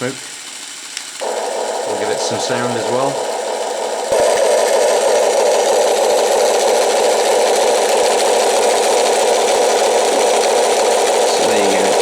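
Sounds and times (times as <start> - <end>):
simulated diesel engine idle: 1.2 - 12.0.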